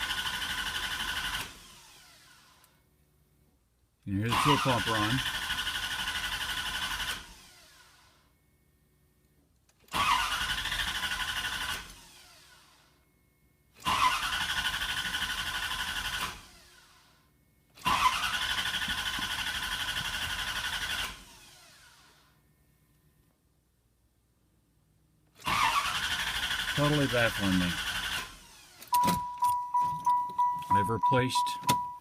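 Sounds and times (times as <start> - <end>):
engine cranking on starter: 0.0 - 2.7, 4.3 - 8.2, 9.8 - 12.8, 13.8 - 17.1, 17.8 - 22.3, 25.4 - 31.9.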